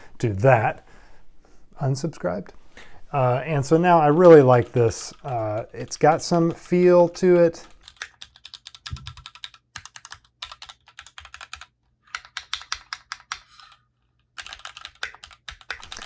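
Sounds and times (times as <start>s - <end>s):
mechanical keyboard typing: 4.1s - 13.8s, 14.4s - 16.0s.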